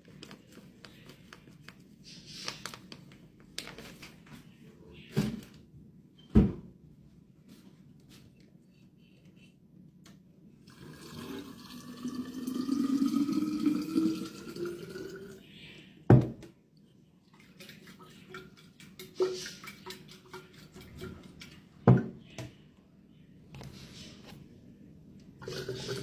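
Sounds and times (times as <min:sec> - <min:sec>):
water pouring into a bottle: 0:10.7 - 0:15.4, 0:25.4 - 0:26.0.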